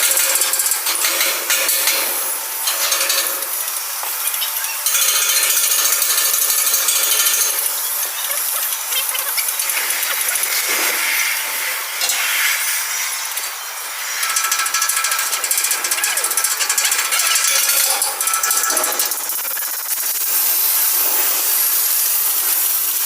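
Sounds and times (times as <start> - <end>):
metalworking hiss and scrape: 0.0 - 23.0
fast even ticking: 3.6 - 10.8, 14.2 - 20.9.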